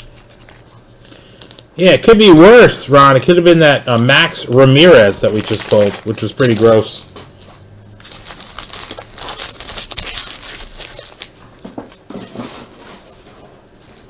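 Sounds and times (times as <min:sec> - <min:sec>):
card pack wrapper crinkling: 0:03.9 - 0:07.3, 0:08.0 - 0:11.6.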